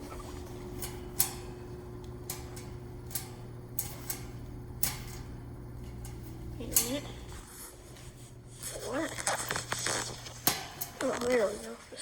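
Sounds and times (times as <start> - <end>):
electric fan motor humming: 0.0 - 12.0
sharp clicks of fan: 0.4 - 7.3, 9.6 - 11.3.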